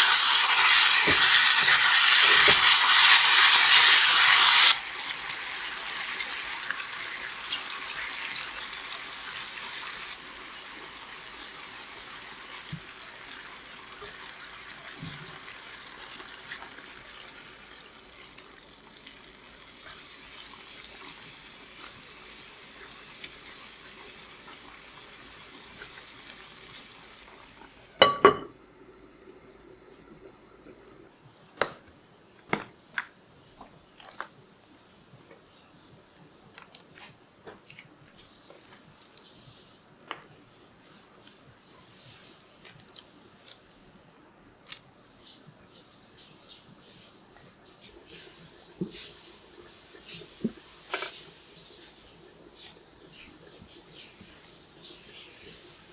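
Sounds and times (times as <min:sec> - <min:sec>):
water hiss: 0:00.0 - 0:04.8
kitchenware clattering: 0:28.0 - 0:28.6.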